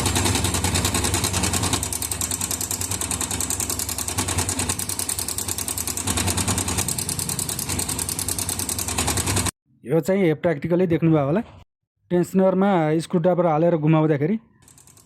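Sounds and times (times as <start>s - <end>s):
metallic timing chain rattle: 0.0s - 9.5s, 14.6s - 15.0s.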